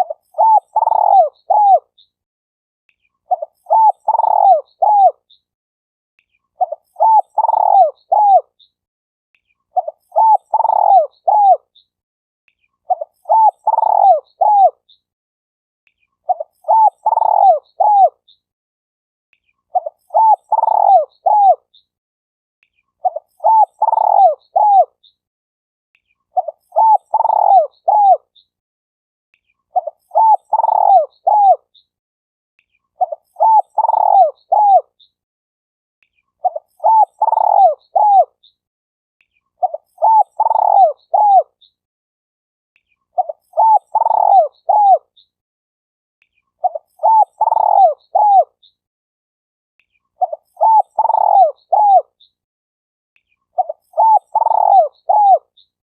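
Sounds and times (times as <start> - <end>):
dove cooing: 0.0 - 1.9, 3.3 - 5.2, 6.6 - 8.5, 9.8 - 11.6, 12.9 - 14.8, 16.3 - 18.2, 19.8 - 21.6, 23.0 - 24.9, 26.4 - 28.2, 29.8 - 31.6, 33.0 - 34.9, 36.4 - 38.3, 39.6 - 41.5, 43.2 - 45.1, 46.6 - 48.6, 50.2 - 52.1, 53.6 - 55.5.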